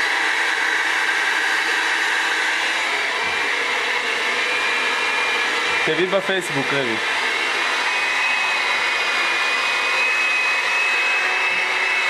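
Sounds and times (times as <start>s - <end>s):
appliance motor whirring: 0.0s - 12.0s.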